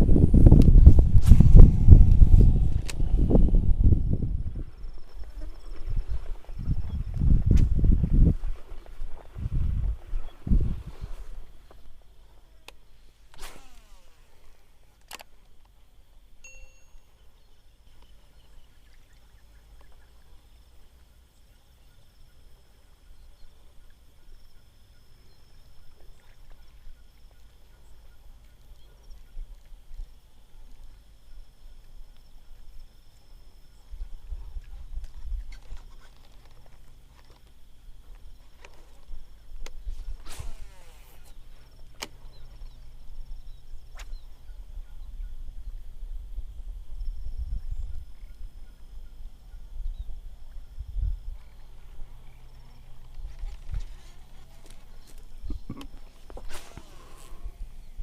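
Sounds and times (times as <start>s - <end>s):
low rumble: 0.0s - 5.3s
low wind rumble: 0.0s - 15.0s, 37.8s - 58.0s
fishing reel spool whirring: 13.3s - 15.0s, 56.4s - 57.8s
sharp clicks: 15.0s - 15.7s.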